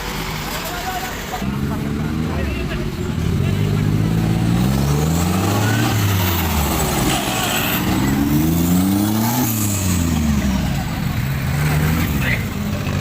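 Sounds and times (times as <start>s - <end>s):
off-road vehicle engine revving: 0.0s - 13.0s.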